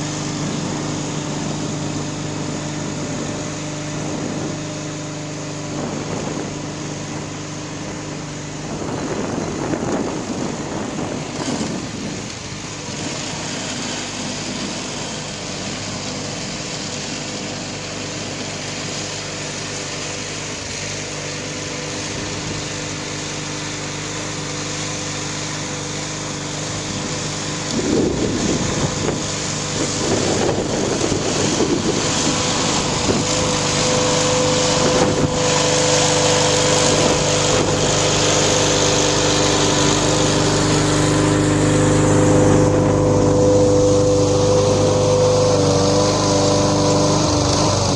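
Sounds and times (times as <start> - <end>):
backhoe engine running: 0.0 - 47.9.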